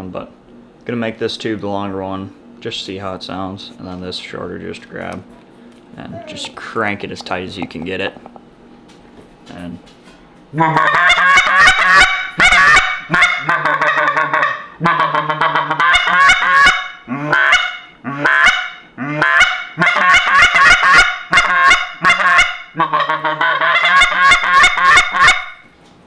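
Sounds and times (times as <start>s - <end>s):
goose call honks and clucks: 6.0s - 8.4s, 10.6s - 25.6s.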